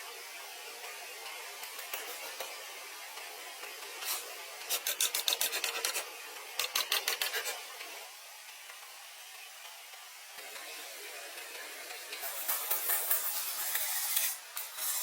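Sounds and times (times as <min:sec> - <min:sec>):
hand tool rasping on bamboo: 0:04.1 - 0:07.6.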